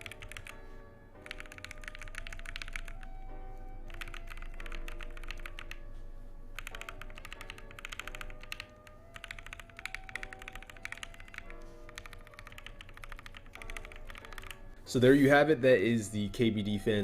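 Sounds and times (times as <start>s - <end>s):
fast mechanical keyboard typing: 0.0s - 0.6s, 1.2s - 5.9s, 6.6s - 14.7s
background music: 0.0s - 17.0s.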